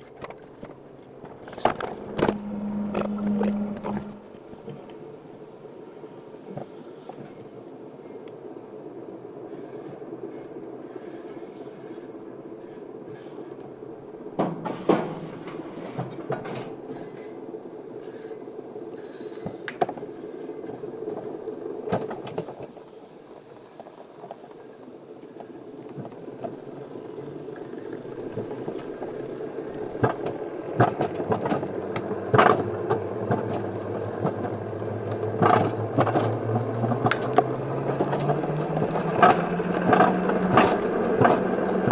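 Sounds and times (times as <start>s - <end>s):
coaster sled rolling rumble: 0.0s - 41.9s
low mechanical hum rising: 1.3s - 5.7s, 26.7s - 41.9s
sharp clacks and rattles: 30.0s - 41.9s.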